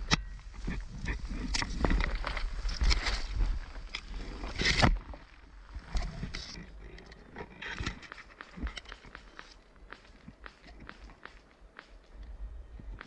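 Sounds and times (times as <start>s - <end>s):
sharp clicks: 6.9s - 13.0s.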